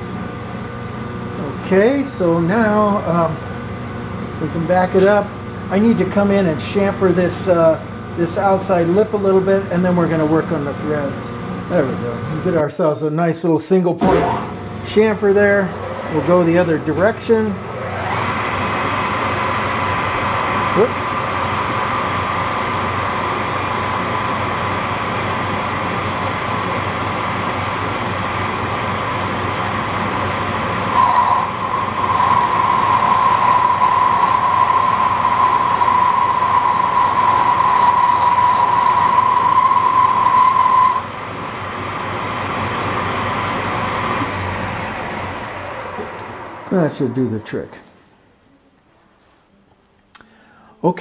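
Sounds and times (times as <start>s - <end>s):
metal lathe running: 30.0s - 41.1s
high cutting squeal: 30.2s - 41.0s.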